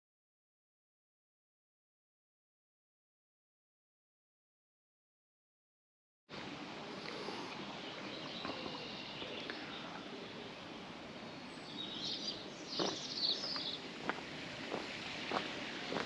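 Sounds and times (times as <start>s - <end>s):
steady background hiss: 6.3s - 16.0s
birds chirping: 6.4s - 16.0s.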